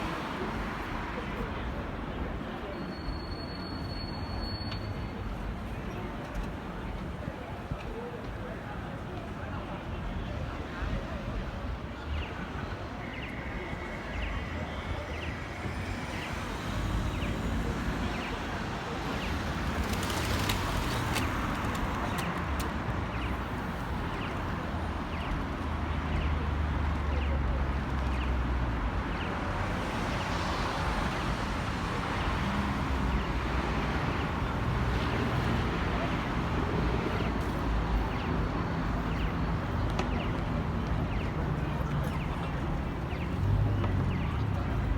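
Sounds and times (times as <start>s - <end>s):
crowd voices: 0.0s - 25.4s, 29.1s - 44.9s
vehicles passing: 10.6s - 44.9s.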